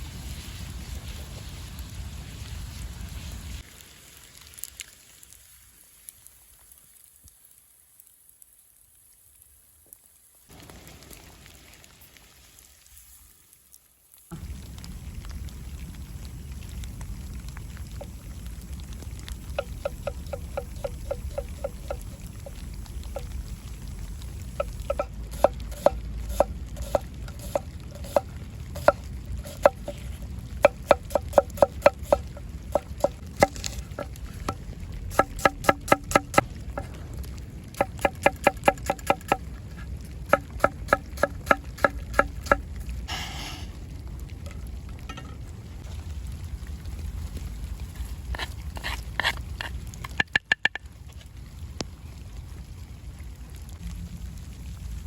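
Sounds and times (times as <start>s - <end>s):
utensil tapping hard surface: 19.5s - 23.3s, 24.6s - 28.2s, 30.6s - 34.1s, 50.1s - 50.8s
low rumble: 36.3s - 37.8s.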